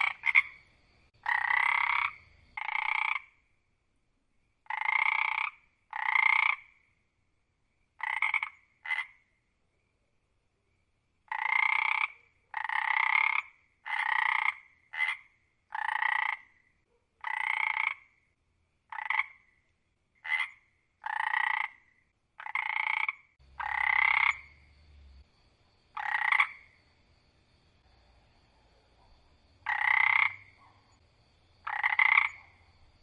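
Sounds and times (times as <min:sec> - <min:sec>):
frog croaking: 0:00.0 - 0:03.5, 0:04.6 - 0:07.0, 0:08.0 - 0:09.4, 0:11.2 - 0:18.2, 0:18.9 - 0:25.3, 0:25.9 - 0:26.8, 0:29.6 - 0:31.0, 0:31.6 - 0:33.0.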